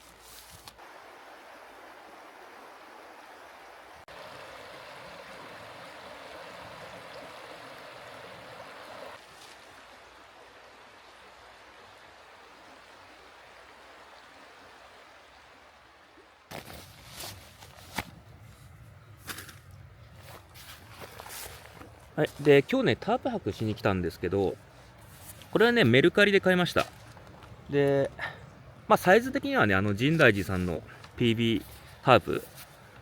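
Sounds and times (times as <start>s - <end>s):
stream flowing: 0.0s - 33.0s.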